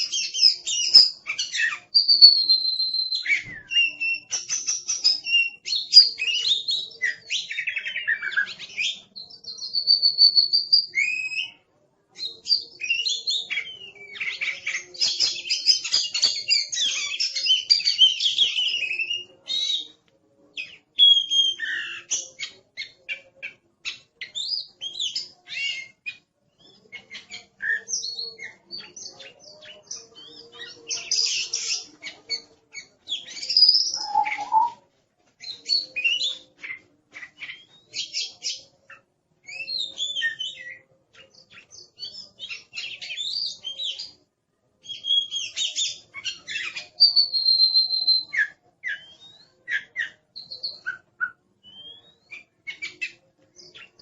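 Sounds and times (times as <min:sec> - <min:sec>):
bird singing fast song: 0:00.0 - 0:11.6, 0:23.9 - 0:34.8.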